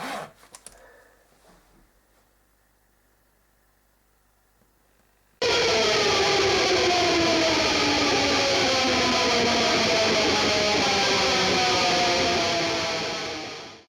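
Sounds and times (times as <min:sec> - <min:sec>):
distorted electric guitar: 0:05.4 - 0:13.9.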